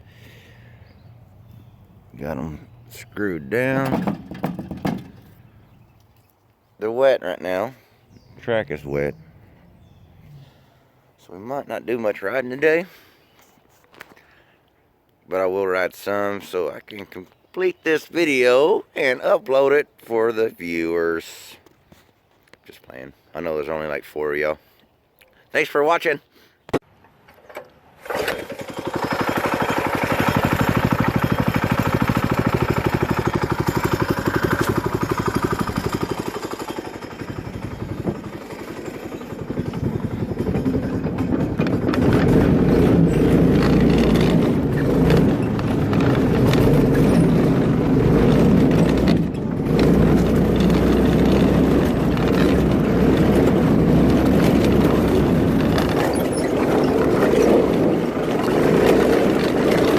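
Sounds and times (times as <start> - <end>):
go-kart engine running: 3.7 - 5.3, 28.0 - 59.9.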